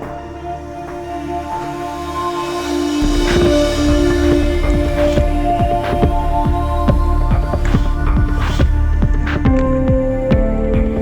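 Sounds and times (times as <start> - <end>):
kick drum beat: 3.0 - 11.0.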